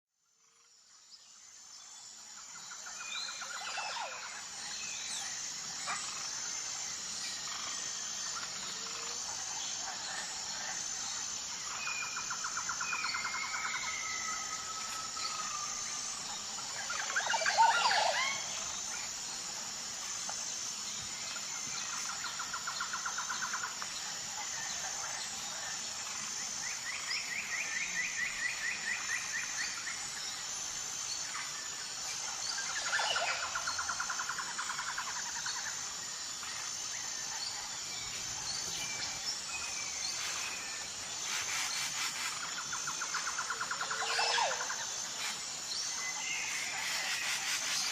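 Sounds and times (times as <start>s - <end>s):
insect drone: 0.2s - 47.9s
birds trilling and whistling: 11.6s - 19.0s.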